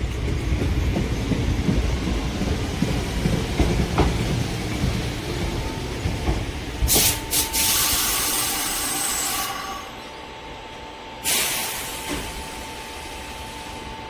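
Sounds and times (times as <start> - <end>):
train hissing: 3.7 - 10.1, 11.2 - 14.0.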